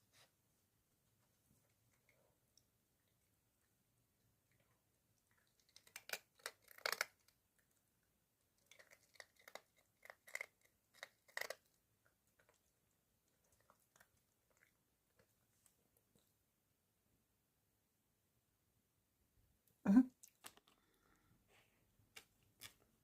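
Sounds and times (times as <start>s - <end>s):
dog crunching dry food: 5.2s - 7.8s, 8.6s - 12.7s.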